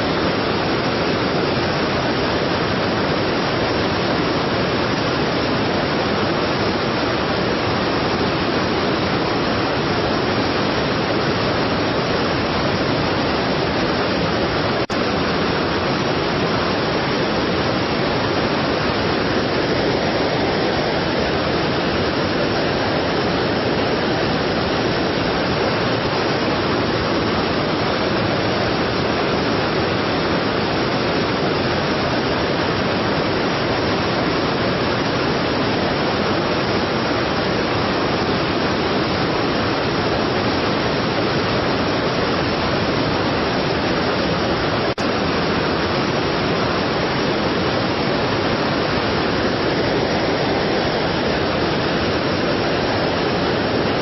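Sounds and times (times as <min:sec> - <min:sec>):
waterfall rushing: 0:00.0 - 0:54.0.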